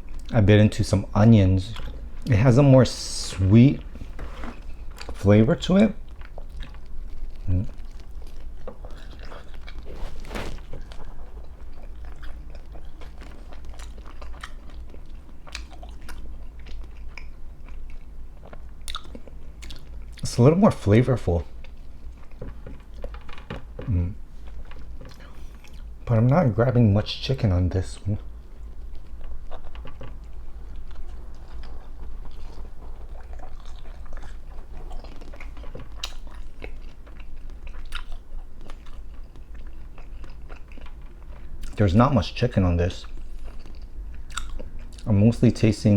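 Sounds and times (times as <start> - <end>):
chewing pizza: 0.0 - 45.9
crust crunching: 1.2 - 16.9.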